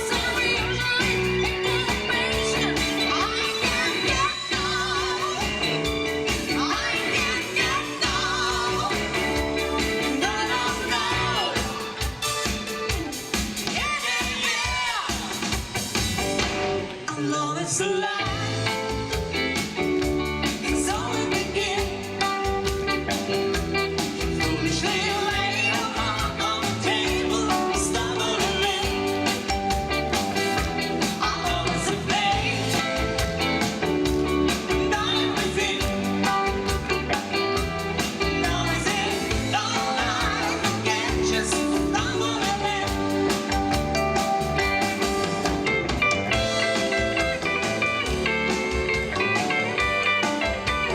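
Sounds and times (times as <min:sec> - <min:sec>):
person singing: 0:00.0 - 0:12.9, 0:20.4 - 0:45.3
drum kit beat: 0:00.0 - 0:17.1, 0:18.3 - 0:50.9
bass guitar: 0:00.0 - 0:50.9
electric guitar: 0:00.0 - 0:50.9
keyboards: 0:18.2 - 0:50.9.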